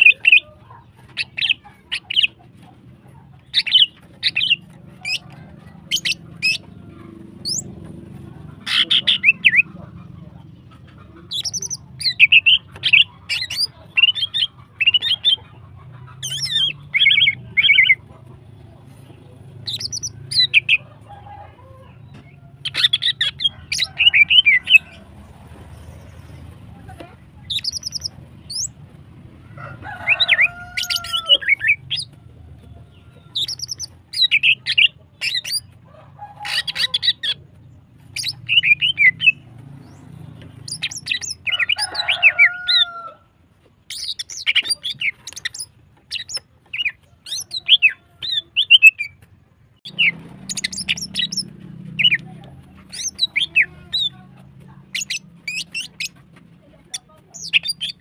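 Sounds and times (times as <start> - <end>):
bird chirping and rattling: 3.5 - 8.0, 19.6 - 20.7, 27.5 - 28.7, 33.4 - 35.8, 38.0 - 42.9, 43.9 - 49.2, 49.8 - 52.2, 52.8 - 54.1, 54.9 - 58.0.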